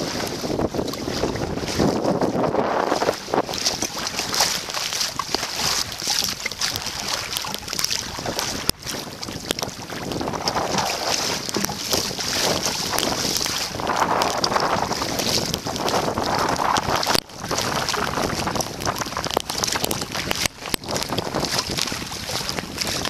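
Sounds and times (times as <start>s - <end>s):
blizzard wind gusting on microphone: 0.0s - 3.8s, 9.8s - 23.0s.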